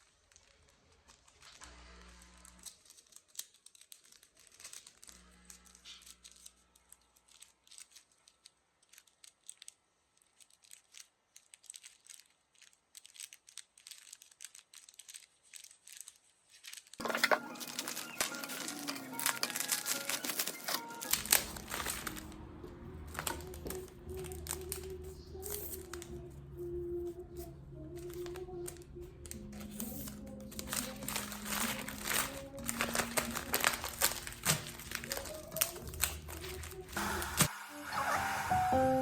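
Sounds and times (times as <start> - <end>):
rustling and crinkling: 0.0 - 37.5
loud sound: 37.0 - 39.0.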